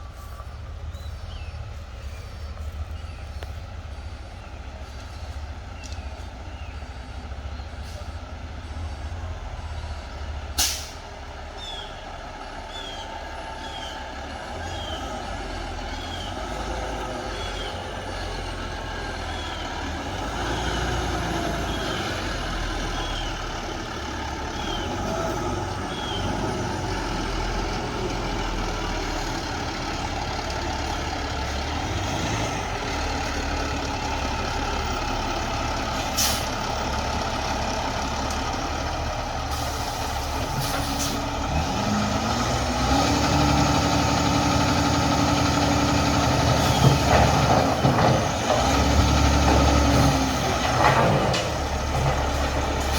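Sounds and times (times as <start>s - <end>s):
diesel truck engine running: 0.0s - 52.9s
air brake burst: 10.6s - 11.0s, 36.2s - 36.5s, 39.5s - 41.3s.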